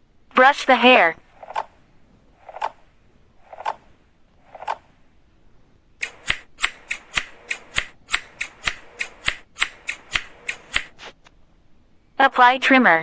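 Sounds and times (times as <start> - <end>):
sharp brush clicks: 1.2 - 5.0, 6.0 - 11.3
soft brush strokes: 6.0 - 11.4.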